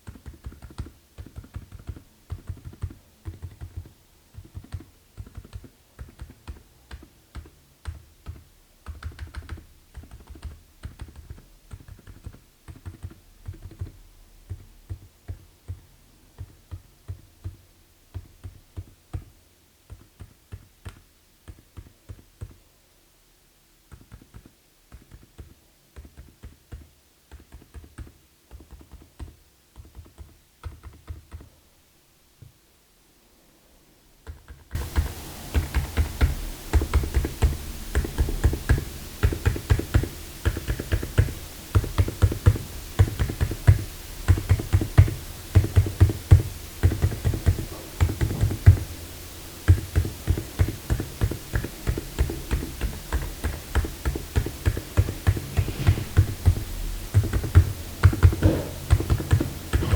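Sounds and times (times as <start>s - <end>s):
typing on mechanical keyboard: 0.0s - 15.8s
steady background hiss: 0.0s - 59.9s.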